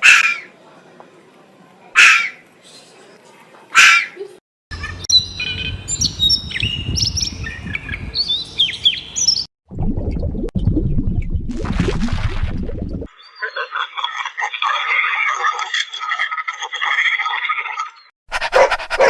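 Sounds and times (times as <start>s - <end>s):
birds chirping and whistling: 4.8s - 9.5s
low rumble: 9.7s - 11.6s.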